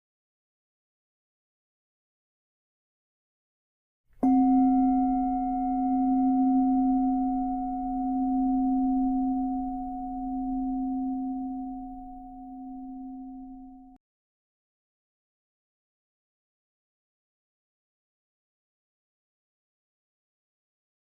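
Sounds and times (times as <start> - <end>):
meditation bell ringing: 4.2 - 14.0.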